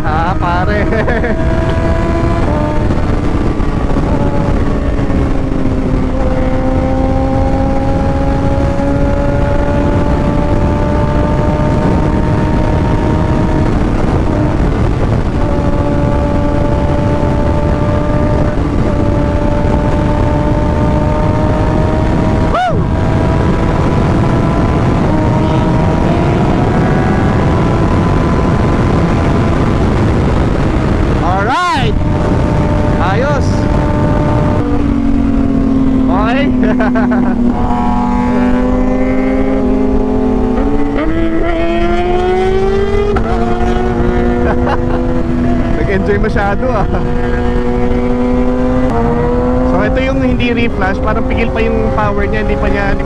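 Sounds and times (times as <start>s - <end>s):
motorcycle engine revving through gears: 0.0s - 53.0s
rising-and-falling tone: 15.7s - 46.1s.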